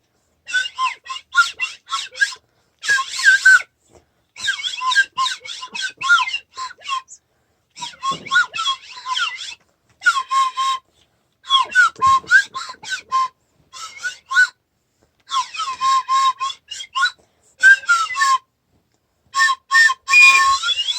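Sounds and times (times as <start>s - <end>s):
short high squeaks bending in pitch: 20.1s - 20.6s.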